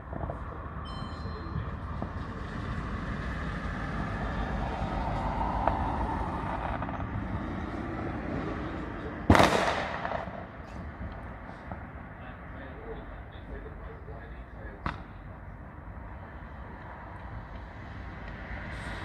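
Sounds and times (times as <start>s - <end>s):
firework bang: 9.3s - 10.6s.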